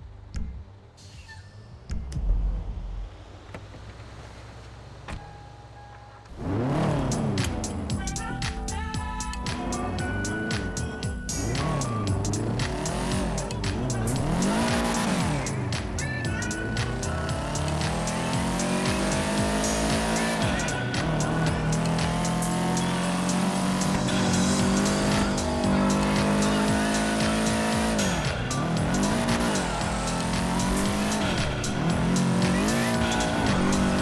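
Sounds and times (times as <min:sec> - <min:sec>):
car engine revving: 0:02.2 - 0:34.0
game music: 0:16.6 - 0:34.0.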